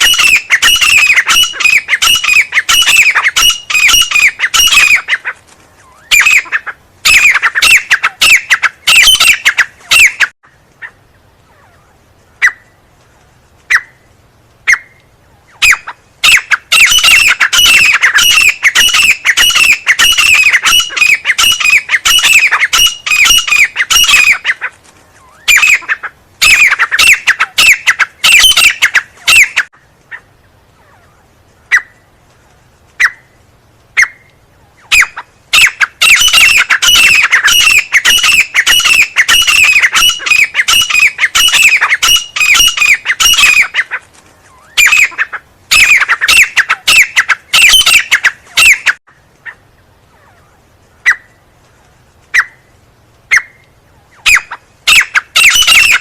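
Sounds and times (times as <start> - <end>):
francolin calling: 0.0 - 12.8, 13.7 - 32.1, 33.0 - 51.4, 53.3 - 56.0.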